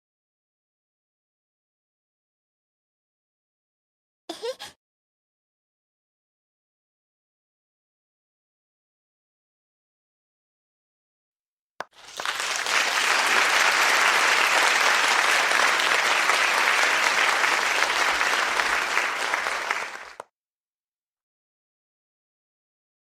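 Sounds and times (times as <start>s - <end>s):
crowd applause: 11.8s - 20.2s.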